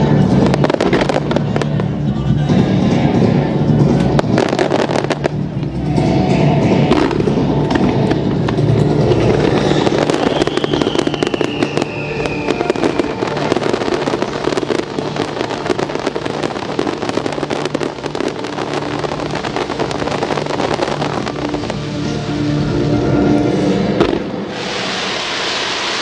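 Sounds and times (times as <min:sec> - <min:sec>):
fireworks bursting and crackling: 0:00.0 - 0:26.0
firework descending whistle: 0:08.9 - 0:26.0.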